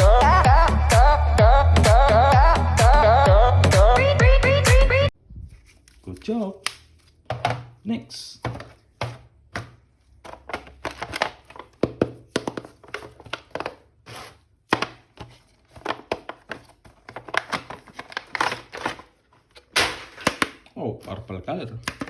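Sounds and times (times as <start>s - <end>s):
plastic packaging clicking and crinkling: 9.6s - 13.9s, 14.7s - 22.0s.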